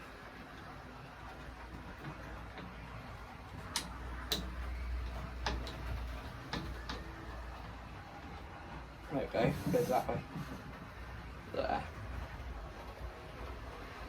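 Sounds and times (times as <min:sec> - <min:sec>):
repair stand clicks and knocks: 0:03.7 - 0:04.6, 0:05.4 - 0:05.9.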